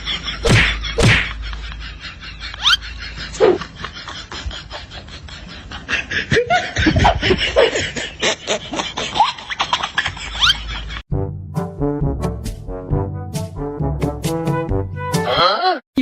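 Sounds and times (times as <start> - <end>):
people laughing: 0.0 - 11.0.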